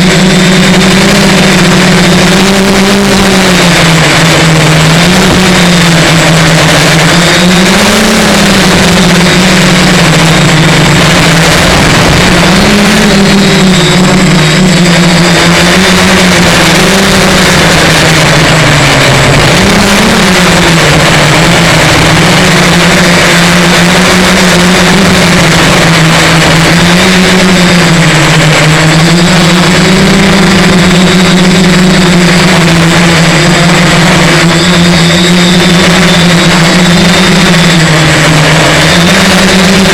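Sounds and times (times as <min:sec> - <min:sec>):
drone motors and propellers droning: 0:00.0 - 0:39.9
wind rush on microphone: 0:00.0 - 0:39.9.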